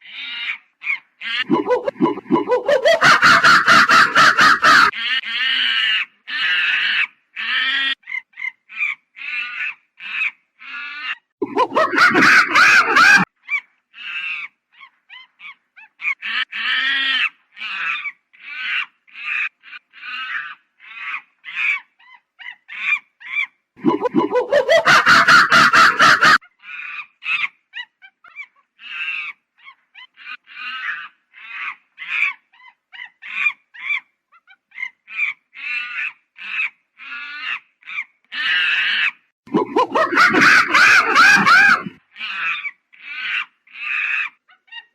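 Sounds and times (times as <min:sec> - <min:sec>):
monkey calling: 0:01.3 - 0:05.0, 0:11.4 - 0:13.3, 0:23.8 - 0:27.5, 0:37.4 - 0:44.9.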